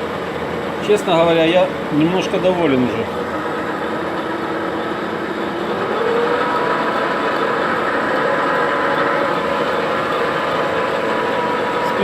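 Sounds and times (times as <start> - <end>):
metal lathe whining: 0.0 - 12.0
drill cutting metal: 3.1 - 12.0.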